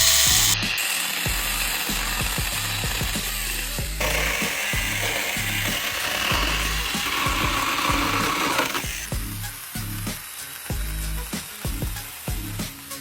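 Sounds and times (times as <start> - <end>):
chainsaw cutting wood: 0.0 - 9.2
background music with steady beat: 0.0 - 13.0.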